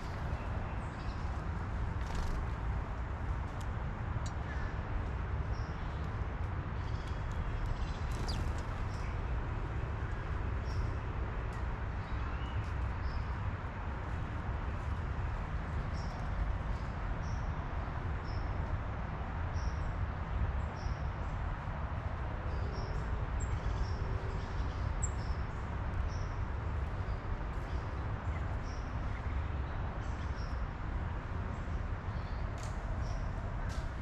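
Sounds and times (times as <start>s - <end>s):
small birds chirping: 6.8s - 9.3s.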